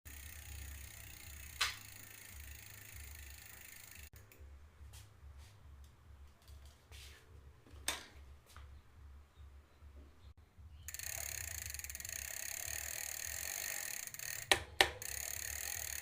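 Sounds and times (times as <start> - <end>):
bicycle parts clicking: 0.1 - 4.5, 5.8 - 6.8, 10.9 - 16.0.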